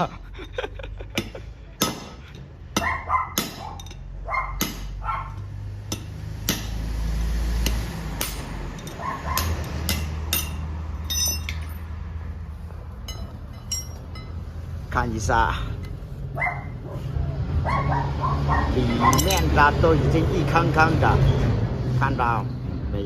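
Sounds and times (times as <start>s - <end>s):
ringing metal clink: 2.8s - 4.1s, 8.2s - 11.9s, 13.0s - 14.6s, 19.0s - 19.5s.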